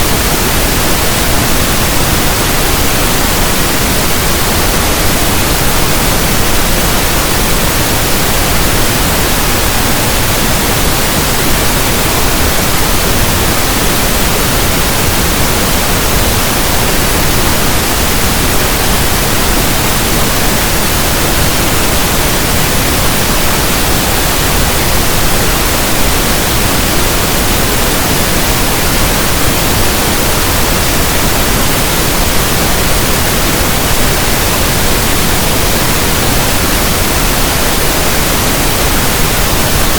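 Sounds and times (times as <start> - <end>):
steady pink noise hiss: 0.0 - 39.9.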